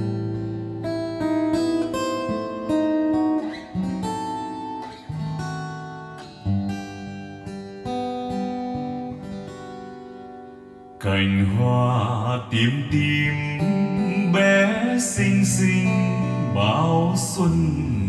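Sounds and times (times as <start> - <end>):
acoustic guitar melody: 0.0 - 18.0.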